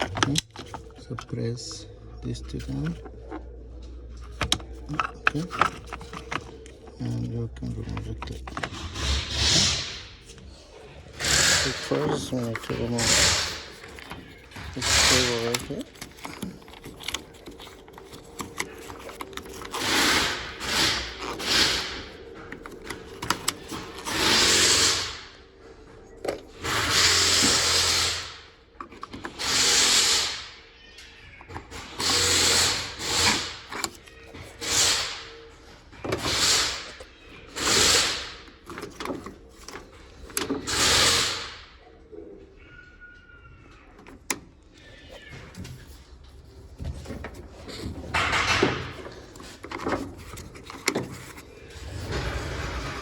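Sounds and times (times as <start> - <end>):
small handling noises: 0.0 - 30.1, 30.8 - 52.8
handheld power tool bursts: 11.2 - 13.7, 14.6 - 15.8, 29.3 - 30.5, 31.7 - 33.7, 37.5 - 38.4.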